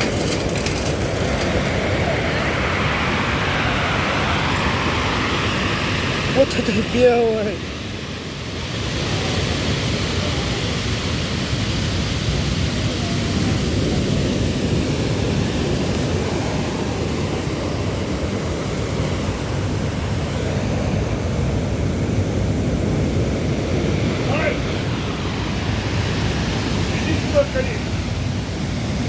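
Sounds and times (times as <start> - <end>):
sea surf rushing on shore: 0.0 - 29.0
wind buffeting microphone: 0.0 - 29.0.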